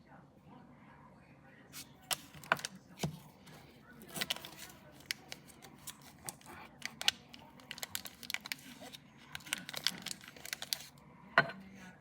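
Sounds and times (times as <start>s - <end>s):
paper wrapper crinkling: 1.8s - 3.4s, 4.0s - 11.0s.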